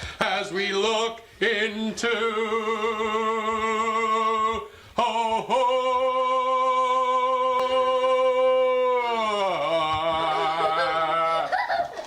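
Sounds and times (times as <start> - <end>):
man singing operatic notes: 0.0 - 11.6.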